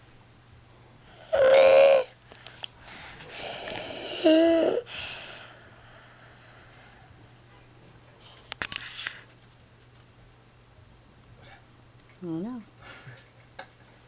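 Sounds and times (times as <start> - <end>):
child's harsh strained breathing: 1.2 - 2.1, 3.3 - 5.6.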